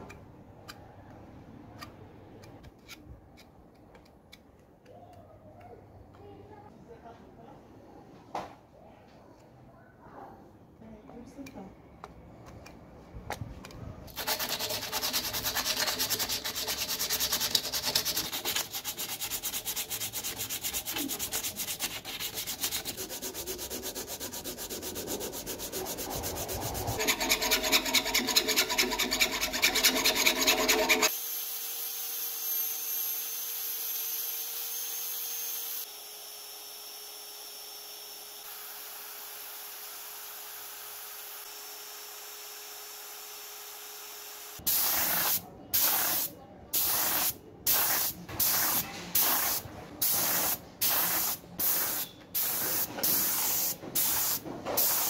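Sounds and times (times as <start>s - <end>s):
sandpaper rubbing on metal: 14.1s - 31.1s.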